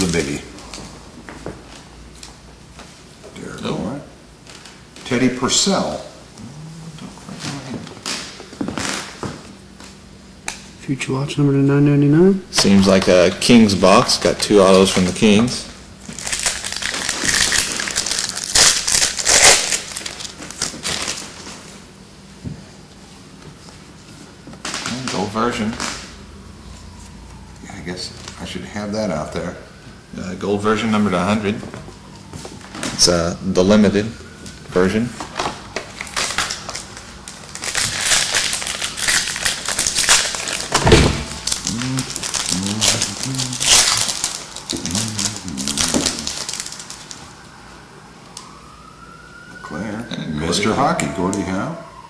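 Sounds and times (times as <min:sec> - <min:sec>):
wrapper crinkling: 0:16.0 - 0:21.8, 0:35.2 - 0:47.5.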